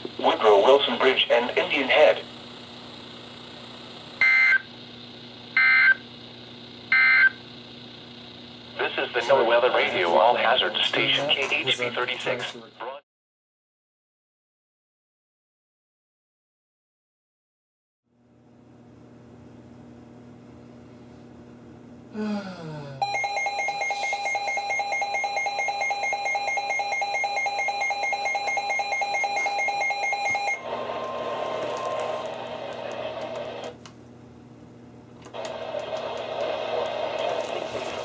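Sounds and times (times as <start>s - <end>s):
hissy radio static: 0.0s - 2.4s, 8.7s - 13.0s, 35.4s - 38.0s
pulsing electronic alarm tone: 4.2s - 4.7s, 6.9s - 7.4s, 23.0s - 32.6s.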